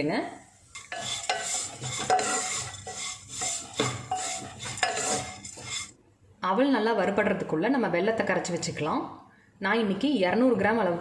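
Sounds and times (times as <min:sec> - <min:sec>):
spatula scraping in pan: 0:00.5 - 0:06.0
rice frying: 0:00.6 - 0:05.9.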